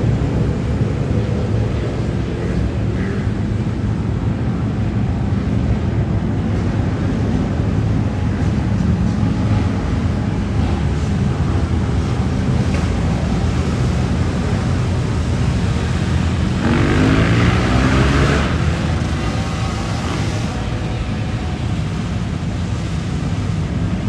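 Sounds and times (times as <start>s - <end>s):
motorcycle engines rumbling: 0.0s - 24.0s
motorcycle engine revving: 12.0s - 22.6s.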